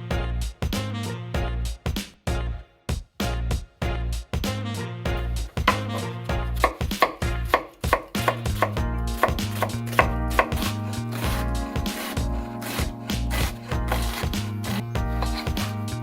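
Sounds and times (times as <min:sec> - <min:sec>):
background music: 0:00.0 - 0:16.0
knife chopping on cutting board: 0:05.6 - 0:05.9, 0:06.6 - 0:14.6.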